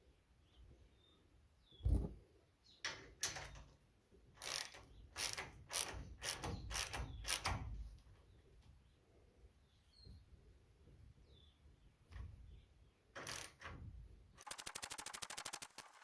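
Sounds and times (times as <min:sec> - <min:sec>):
ratchet wrench clicking: 0:04.4 - 0:07.6, 0:13.2 - 0:13.6, 0:14.4 - 0:16.0.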